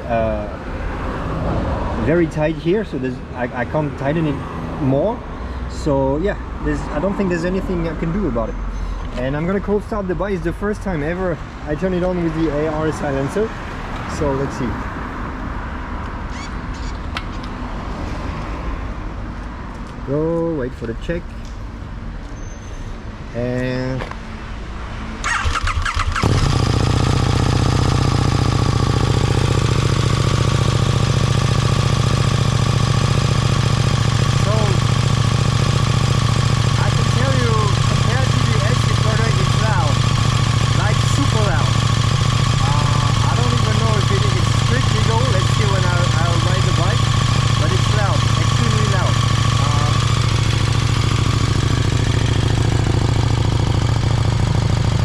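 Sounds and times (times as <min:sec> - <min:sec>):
motorcycle starter cranking: 0:25.2 - 0:28.6, 0:33.7 - 0:54.5
motorcycle engine idling: 0:25.2 - 0:55.0.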